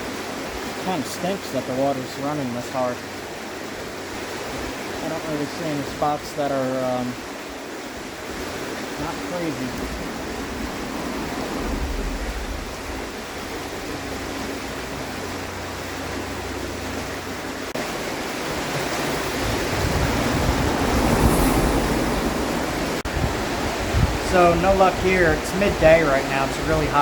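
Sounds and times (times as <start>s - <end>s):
river water rushing: 0.0s - 27.0s.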